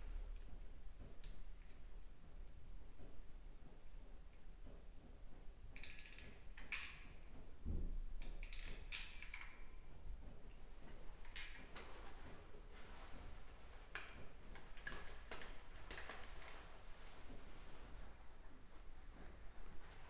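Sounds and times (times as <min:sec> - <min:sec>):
small hard parts scraping and clicking: 0:05.8 - 0:07.1, 0:08.2 - 0:09.6
low thump: 0:07.6 - 0:08.1.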